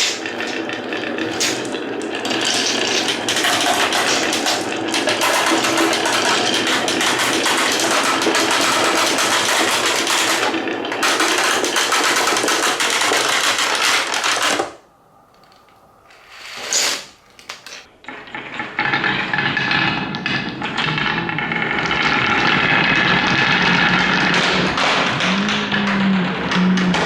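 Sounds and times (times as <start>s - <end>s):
scattered knocks: 0.0s - 14.7s
marbles clattering down marble run: 0.0s - 14.8s.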